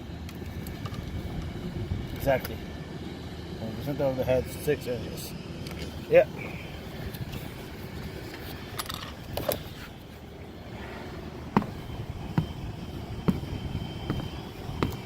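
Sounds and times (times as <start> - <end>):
steady low rumble: 0.0 - 15.0
sharp knocks: 11.5 - 15.0.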